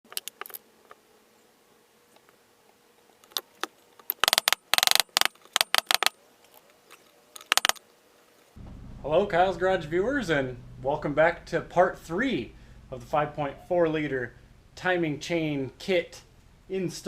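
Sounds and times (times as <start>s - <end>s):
sharp clicks and clatters: 4.1s - 6.2s, 7.4s - 7.8s.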